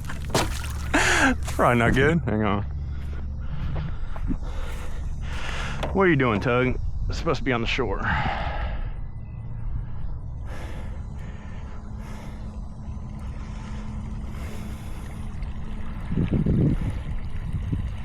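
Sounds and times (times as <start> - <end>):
steady low hum: 0.0 - 18.0
breathy puffs: 0.3 - 1.8
wind buffeting microphone: 15.8 - 18.0.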